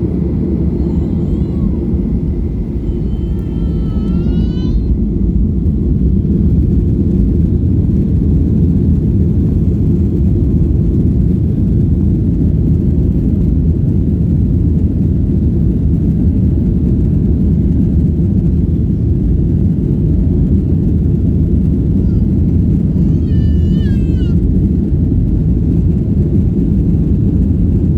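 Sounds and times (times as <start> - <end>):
airliner cabin engine noise: 0.0 - 27.9
high wavering cry: 0.6 - 5.1.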